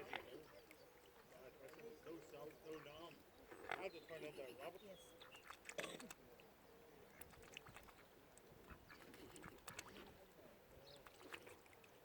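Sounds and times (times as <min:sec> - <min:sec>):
ducks quacking softly: 0:00.0 - 0:02.1, 0:07.0 - 0:11.7.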